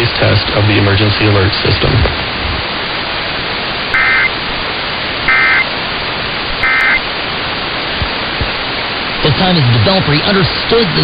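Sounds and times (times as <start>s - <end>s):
radio static hiss: 0.0s - 11.0s
warbling digital tone bursts: 4.0s - 4.3s, 5.3s - 5.6s, 6.6s - 7.0s.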